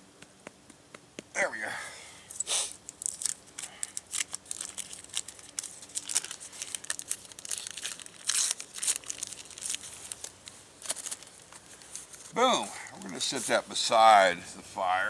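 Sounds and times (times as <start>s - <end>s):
crinkling and crackling wrapping: 2.3s - 13.8s.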